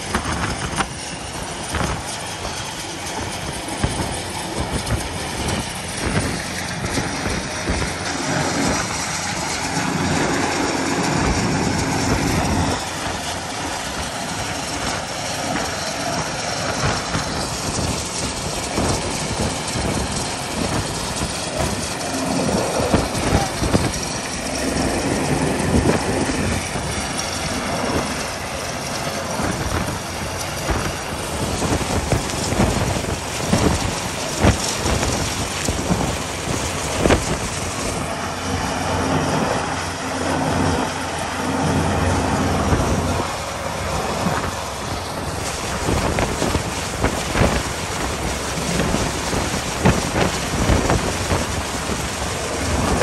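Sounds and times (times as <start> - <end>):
helicopter rotor and engine: 0.0 - 53.0
wind buffeting microphone: 0.0 - 53.0.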